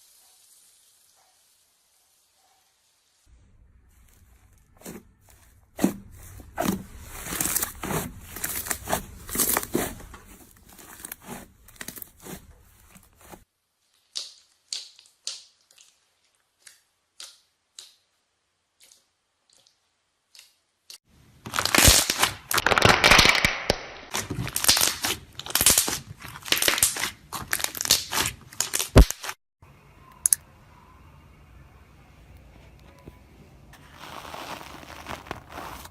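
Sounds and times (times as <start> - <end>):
slime crackling and popping: 14.0 - 16.0, 21.4 - 29.4.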